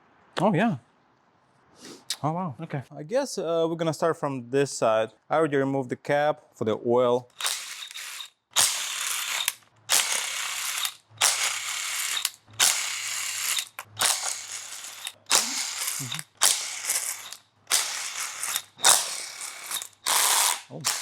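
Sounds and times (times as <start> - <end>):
ratchet wrench clicking: 7.3 - 21.0.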